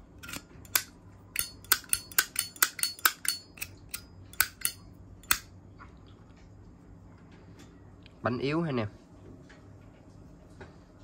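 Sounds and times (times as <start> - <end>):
lighter clicking metallic: 0.2 - 5.5.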